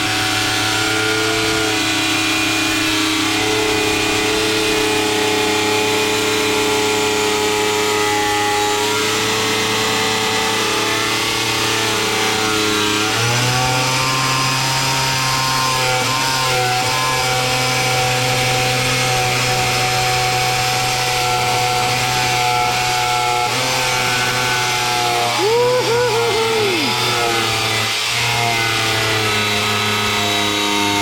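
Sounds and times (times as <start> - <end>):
angle grinder cutting tile: 0.0 - 31.0.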